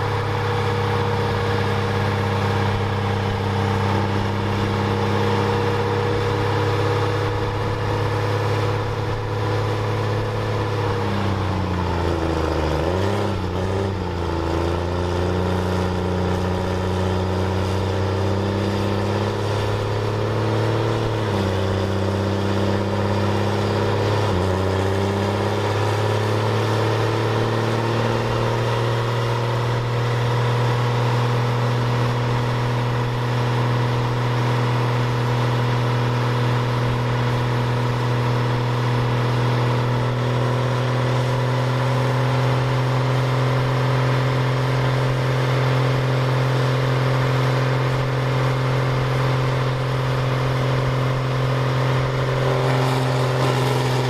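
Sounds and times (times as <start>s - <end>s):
diesel truck engine droning: 0.0s - 54.0s.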